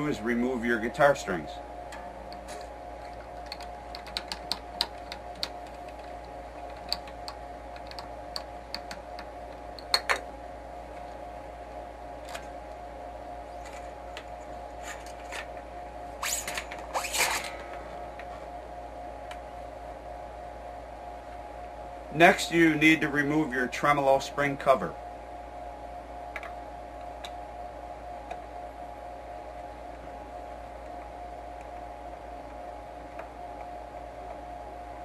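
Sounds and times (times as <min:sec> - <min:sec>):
faint steady background tone: 0:00.0 - 0:35.0.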